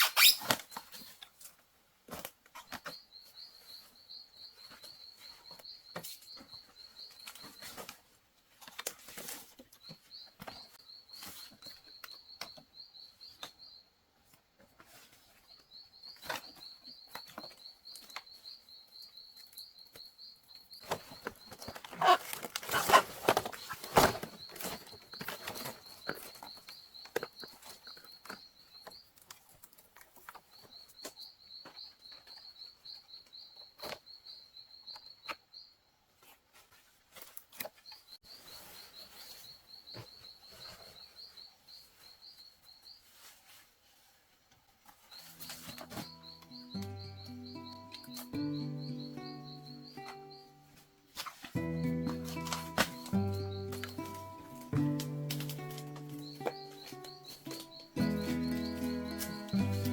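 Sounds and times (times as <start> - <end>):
rustling and scraping: 4.6 - 11.8, 14.4 - 18.0, 20.8 - 30.6, 36.2 - 48.4, 49.4 - 59.9
high chirping trill: 45.3 - 50.8, 51.6 - 59.9.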